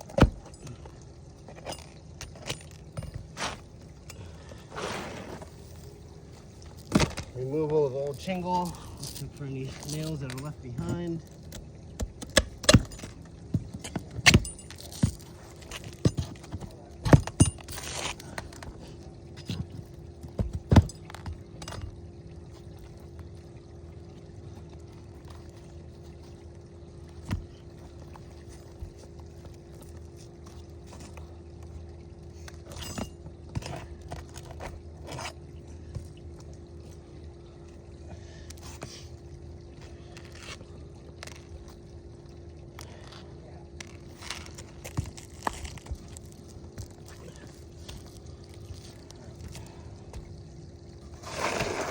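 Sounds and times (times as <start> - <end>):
pry tool clinking and scraping: 8.2 - 18.8, 32.5 - 35.3.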